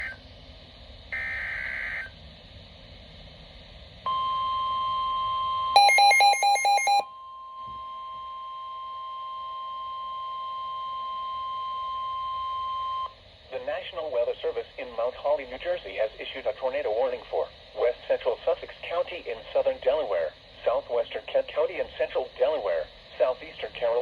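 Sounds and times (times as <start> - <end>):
digital data burst tones: 1.2 - 2.1
steady alarm tone: 1.2 - 2.1, 4.1 - 13.1.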